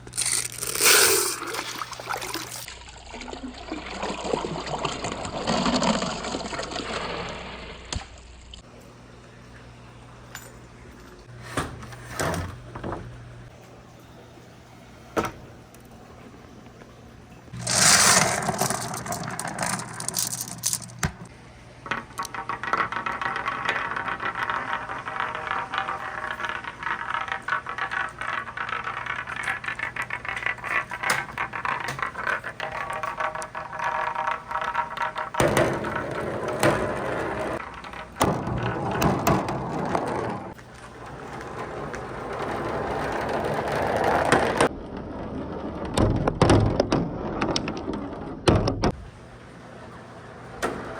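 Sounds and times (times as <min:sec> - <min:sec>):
marbles clacking on wooden track: 0:00.0 - 0:02.7, 0:17.6 - 0:44.7, 0:45.4 - 0:49.0
marbles rolling rattle: 0:00.0 - 0:02.7, 0:17.6 - 0:21.2, 0:21.9 - 0:48.3.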